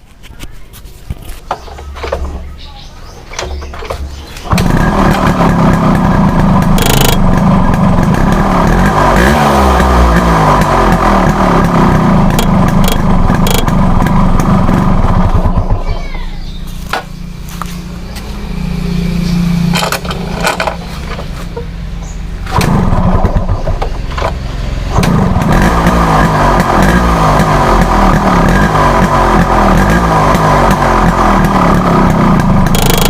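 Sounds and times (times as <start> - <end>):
motorcycle engine revving and idling: 1.2 - 33.0.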